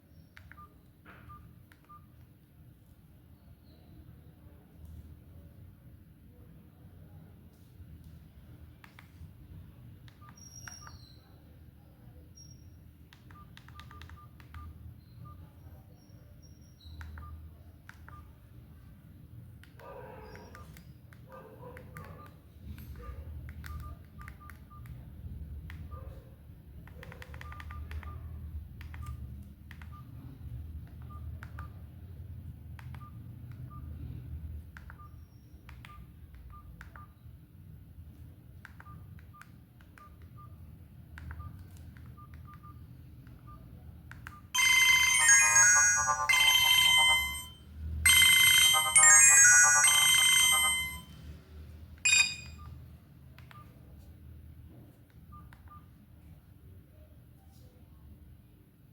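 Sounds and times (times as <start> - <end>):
phone keypad beeps: 0.4 - 2.1, 10.1 - 11.1, 13.3 - 15.5, 16.9 - 18.4, 23.6 - 25.0, 27.0 - 28.2, 34.8 - 37.2, 38.7 - 40.6, 41.2 - 42.8, 43.4 - 51.1, 52.1 - 52.8, 53.4 - 53.8, 55.3 - 55.9
phone button clicks: 52.1 - 52.6.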